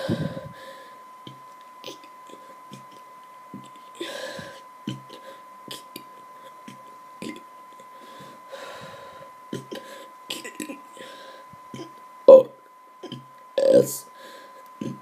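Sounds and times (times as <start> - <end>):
breathy exhale: 0.0 - 1.0, 7.9 - 10.1
boy gulping and burping: 11.8 - 14.0
faint high tone: 12.3 - 14.1.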